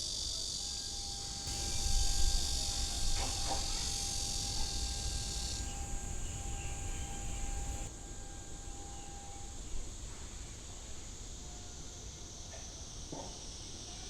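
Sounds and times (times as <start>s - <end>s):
insects chirring: 0.0s - 14.0s
faint steady tone: 0.3s - 12.0s
low rumble: 1.4s - 7.9s.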